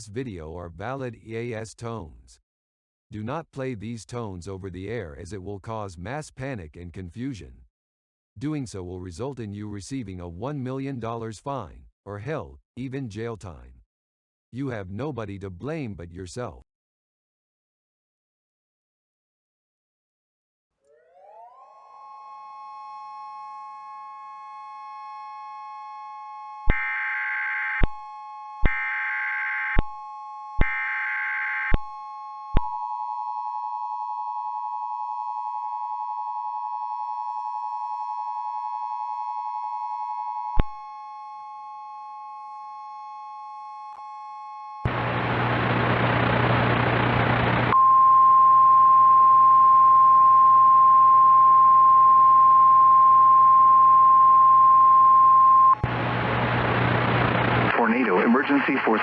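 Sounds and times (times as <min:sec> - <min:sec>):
loud steady single tone: 0:22.7 - 0:28.0, 0:28.6 - 0:56.0
burst of static: 0:44.9 - 0:47.8, 0:55.8 - 0:59.0.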